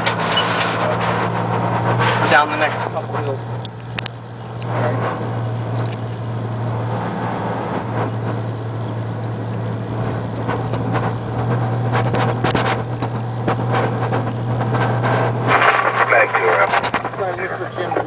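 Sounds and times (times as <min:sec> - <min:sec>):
fire engine droning with road noise: 0:00.0 - 0:18.0
sharp clicks and knocks: 0:03.6 - 0:04.7, 0:05.8 - 0:06.0, 0:08.0 - 0:17.2.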